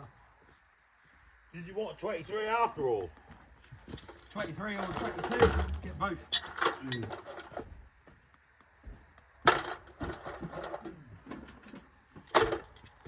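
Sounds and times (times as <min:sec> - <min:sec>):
metal tools clanking: 0:03.9 - 0:07.6, 0:09.5 - 0:13.0.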